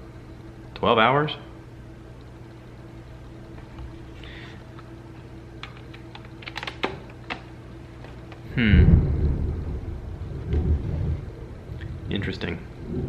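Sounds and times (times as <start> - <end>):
loud low falling rumble: 8.5 - 13.0.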